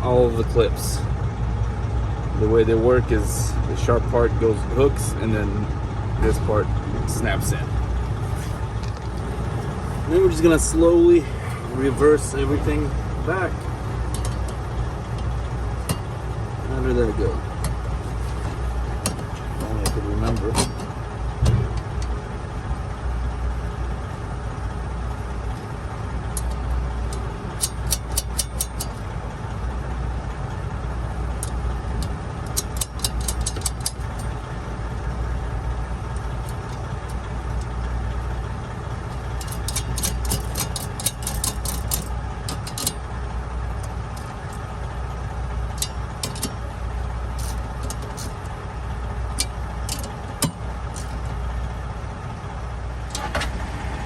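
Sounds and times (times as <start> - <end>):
low engine drone: 0.0 - 54.0
rapid clicking of plastic parts: 26.3 - 29.1, 31.3 - 34.4, 39.0 - 43.1, 47.3 - 48.5, 49.3 - 51.4.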